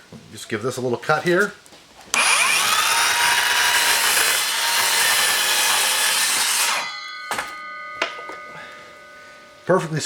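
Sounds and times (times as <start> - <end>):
miter saw cutting plywood: 2.1 - 7.0.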